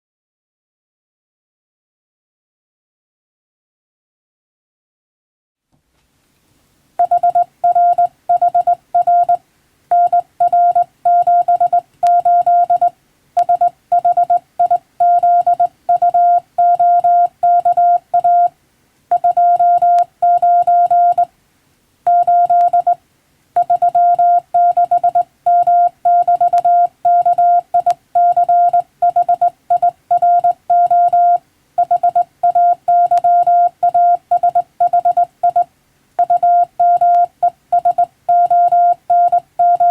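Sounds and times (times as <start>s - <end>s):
morse code beeps: 7.0s - 18.5s, 19.1s - 21.3s, 22.1s - 23.0s, 23.6s - 39.9s.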